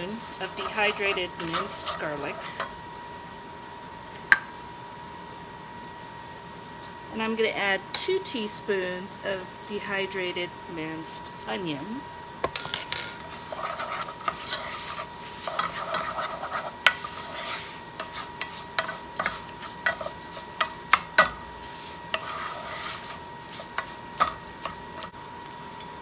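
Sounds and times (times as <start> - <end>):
light sizzle: 0.0 - 12.5, 13.2 - 26.0
utensil scraping and tapping pan: 13.2 - 25.1.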